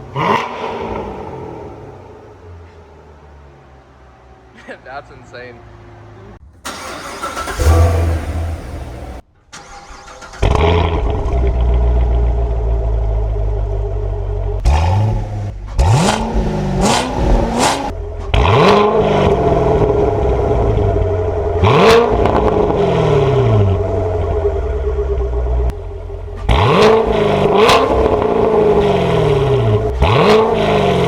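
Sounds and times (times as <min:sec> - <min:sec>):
engine revving: 0:00.0 - 0:02.4, 0:06.0 - 0:31.0
car engine idling: 0:00.0 - 0:31.0.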